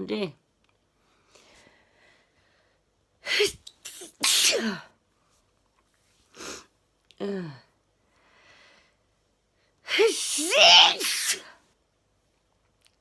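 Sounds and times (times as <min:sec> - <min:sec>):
woman sneezing: 0:03.2 - 0:04.9, 0:09.9 - 0:11.6.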